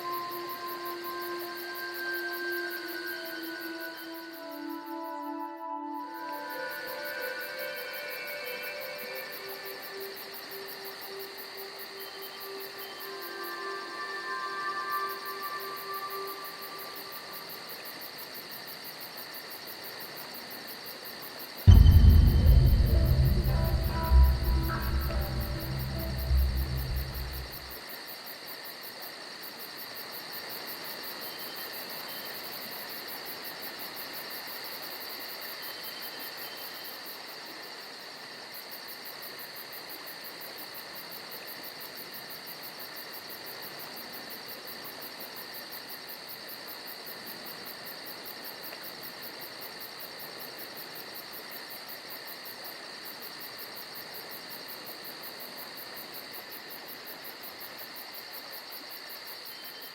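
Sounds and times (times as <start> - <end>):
high insect drone: 0.0 - 27.8
crickets chirping: 0.0 - 59.9.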